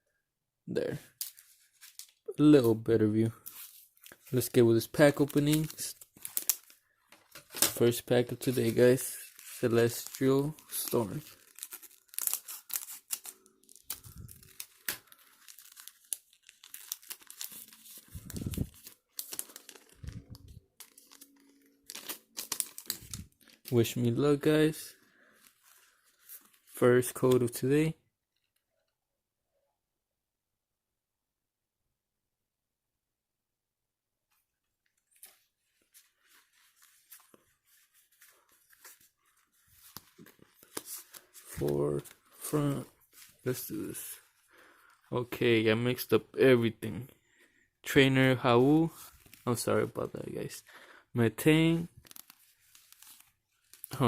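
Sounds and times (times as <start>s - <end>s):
cards being handled: 1.0s - 27.6s, 35.0s - 44.4s, 48.9s - 49.7s, 51.5s - 54.0s
foil wrapper tearing and crinkling: 5.1s - 6.8s, 8.4s - 23.8s, 52.0s - 54.0s.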